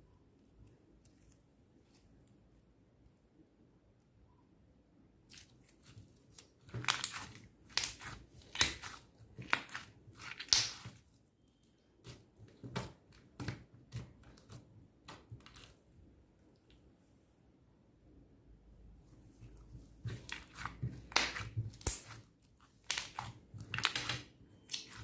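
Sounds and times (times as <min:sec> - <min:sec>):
slime squelching and popping: 0:05.3 - 0:11.1, 0:20.0 - 0:25.0.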